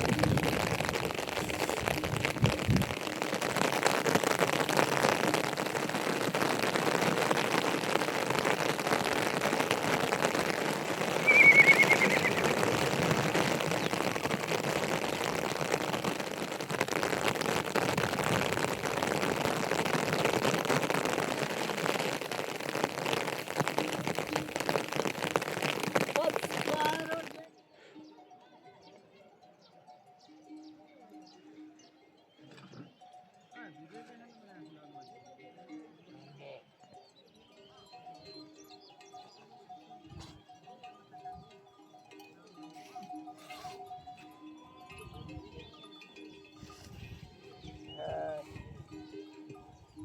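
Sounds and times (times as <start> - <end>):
rain falling: 0.0 - 27.5
high wavering call: 11.1 - 13.3.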